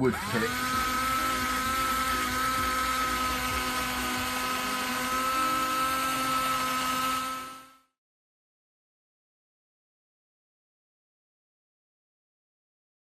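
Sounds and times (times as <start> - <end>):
electric drill whining: 0.0 - 8.0.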